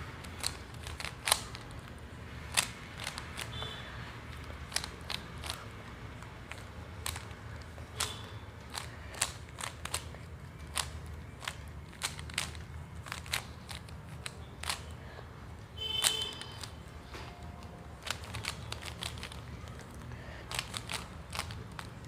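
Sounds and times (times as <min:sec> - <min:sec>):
puzzle cube layers clicking: 0:00.1 - 0:03.6, 0:04.3 - 0:14.9, 0:17.6 - 0:22.0.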